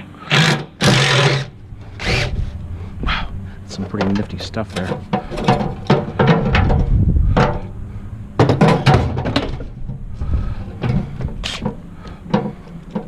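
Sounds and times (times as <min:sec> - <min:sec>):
power tool parts clattering: 0:03.8 - 0:07.7, 0:08.4 - 0:09.9.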